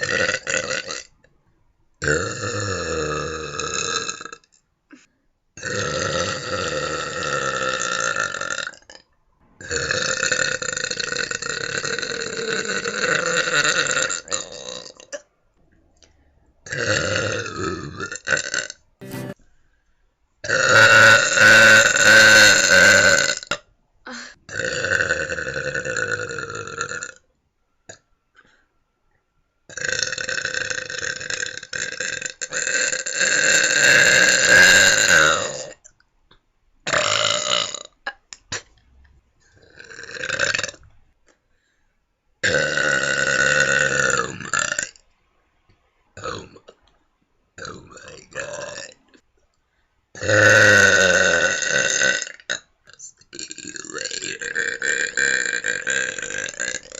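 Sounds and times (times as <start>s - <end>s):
person belching: 0.0s - 1.1s, 2.0s - 9.0s, 9.6s - 15.2s, 20.4s - 27.2s, 29.7s - 35.8s, 36.9s - 37.9s, 39.7s - 40.8s, 42.4s - 45.0s, 50.2s - 52.7s, 53.3s - 56.9s.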